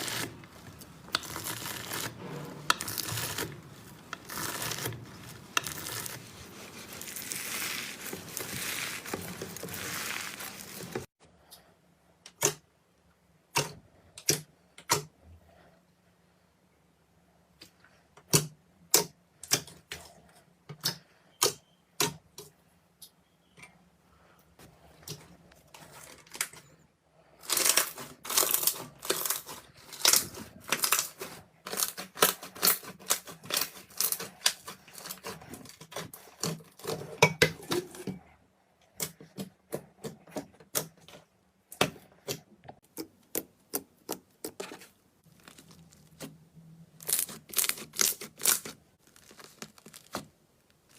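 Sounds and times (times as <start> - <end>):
slime popping and crackling: 0.0 - 11.1, 45.2 - 46.3, 47.0 - 50.9.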